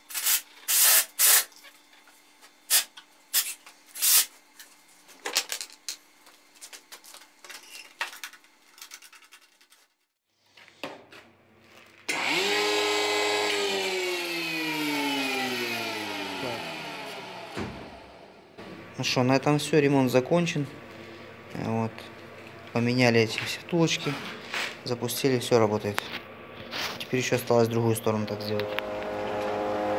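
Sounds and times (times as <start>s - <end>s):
planer motor whining: 12.1s - 18.6s, 28.3s - 29.9s.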